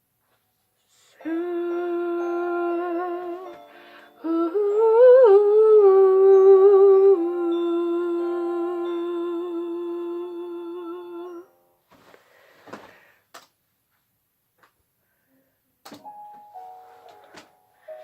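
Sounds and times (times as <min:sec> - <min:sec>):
person singing a long note: 0:01.1 - 0:11.5
sustained accompaniment chord: 0:01.2 - 0:11.8
piano notes: 0:01.2 - 0:12.0, 0:16.0 - 0:18.0.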